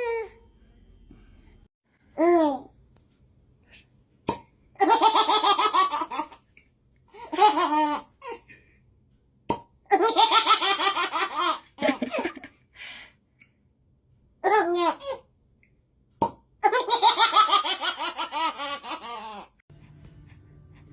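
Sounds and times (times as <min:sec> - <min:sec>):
baby laughing: 0:07.1 - 0:08.4, 0:16.6 - 0:19.6.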